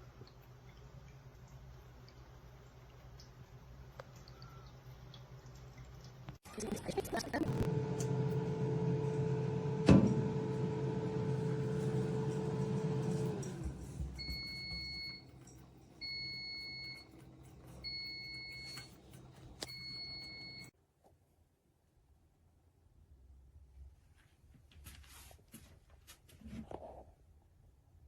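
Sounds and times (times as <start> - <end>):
electrical hum: 0.0 - 20.7.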